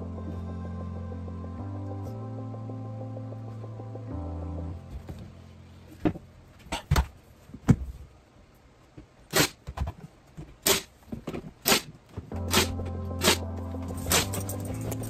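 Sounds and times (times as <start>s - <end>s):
background music: 0.0s - 6.5s, 12.3s - 15.0s.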